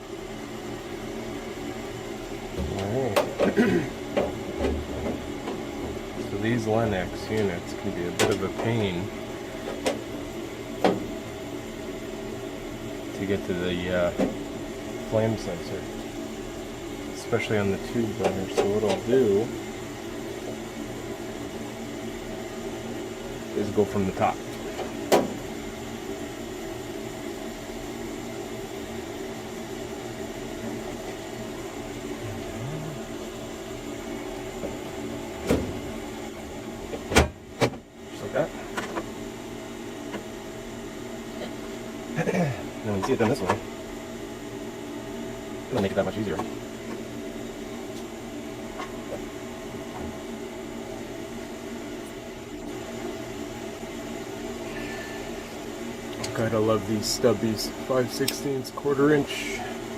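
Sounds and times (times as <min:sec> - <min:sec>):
fan-like hiss: 0:00.0 - 0:59.9
furnace motor hum: 0:00.0 - 0:59.9.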